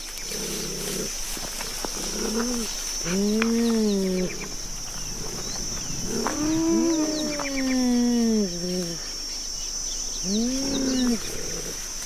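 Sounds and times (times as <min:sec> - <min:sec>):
high-pitched hiss: 0:00.0 - 0:12.0
big cat calls: 0:02.0 - 0:09.1, 0:10.2 - 0:11.8.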